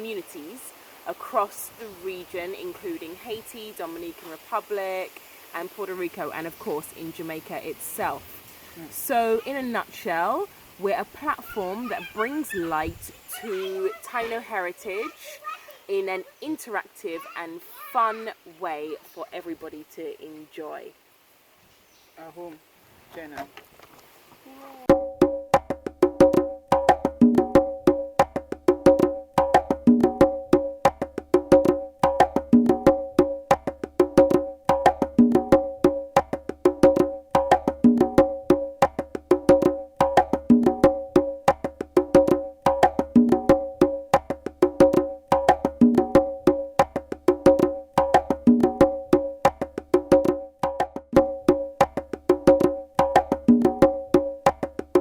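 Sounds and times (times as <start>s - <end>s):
low pitched drum tones: 24.8s - 55.0s.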